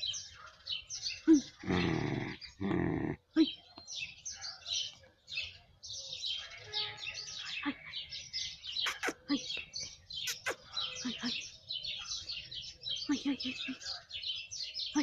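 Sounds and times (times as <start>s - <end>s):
small birds chirping: 0.0s - 15.0s
sharp clicks: 8.9s - 9.2s.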